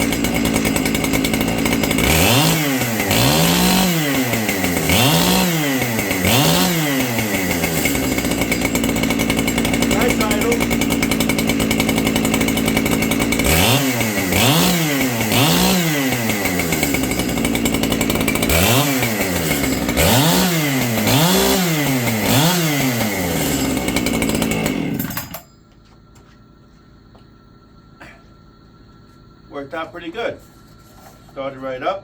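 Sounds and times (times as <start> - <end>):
chainsaw idling and revving: 0.0 - 25.5.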